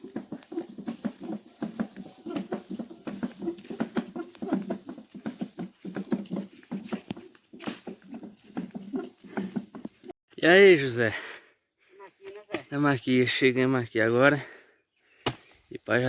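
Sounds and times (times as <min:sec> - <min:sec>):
quick footsteps on dry ground: 0:00.0 - 0:10.2.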